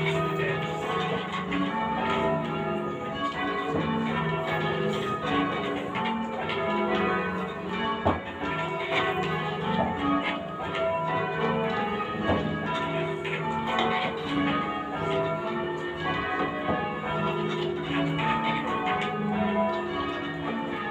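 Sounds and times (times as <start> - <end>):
church bells change ringing: 0.0 - 20.9.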